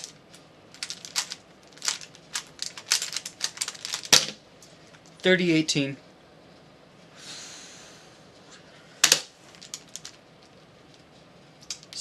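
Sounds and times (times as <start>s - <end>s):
breathy exhale: 7.1s - 8.8s.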